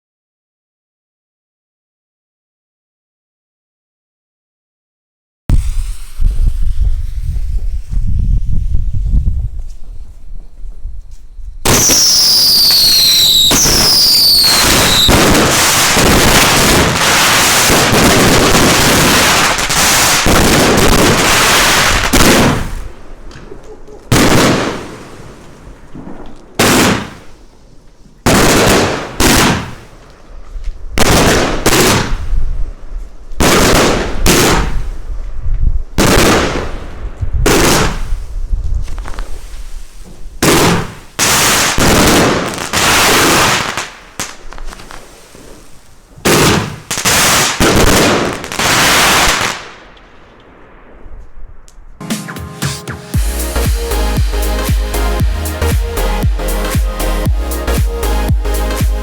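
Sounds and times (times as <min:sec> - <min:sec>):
loud firework bursts: 0:05.5 - 0:10.0, 0:11.6 - 0:32.6, 0:33.4 - 0:35.2, 0:35.9 - 0:51.2, 0:52.6 - 0:59.0
rapid firework barrage: 0:05.5 - 0:10.0, 0:11.6 - 0:27.6, 0:28.2 - 0:32.8, 0:33.4 - 0:35.2, 0:35.9 - 0:51.2
whistling firework shots: 0:05.5 - 0:10.6, 0:11.6 - 0:32.5, 0:33.4 - 0:35.1, 0:35.9 - 0:51.8.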